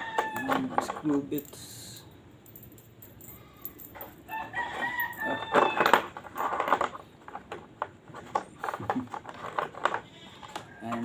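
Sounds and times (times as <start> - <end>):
rooster crowing: 0.0 - 0.6, 4.3 - 6.1.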